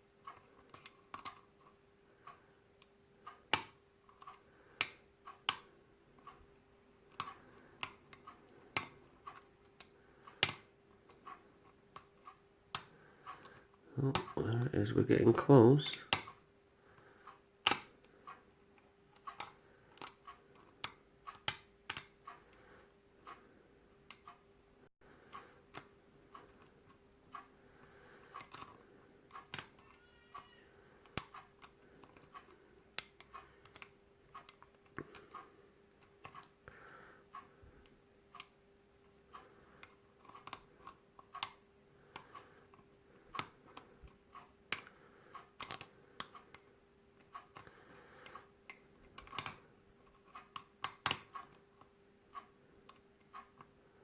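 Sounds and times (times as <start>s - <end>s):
faint steady hum: 0.0s - 54.0s
lock pick clicks and ticks: 0.3s - 1.5s, 7.1s - 11.4s, 15.8s - 16.4s, 17.6s - 18.2s, 19.2s - 22.6s, 28.2s - 36.6s, 39.3s - 42.6s, 43.3s - 46.6s, 47.2s - 49.7s, 50.3s - 51.6s.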